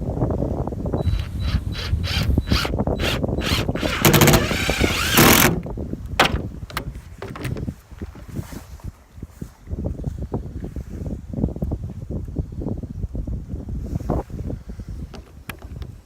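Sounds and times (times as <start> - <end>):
wind rumble on microphone: 0.0 - 16.0
power drill driving screws into metal: 1.0 - 5.6.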